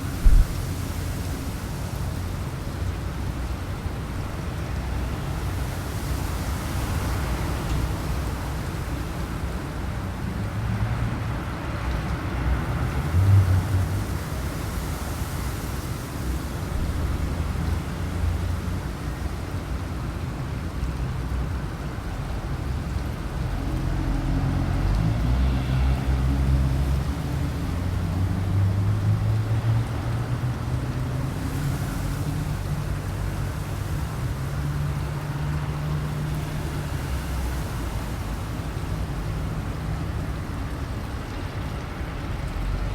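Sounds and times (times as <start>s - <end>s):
gusty wind blowing: 0.0s - 2.4s.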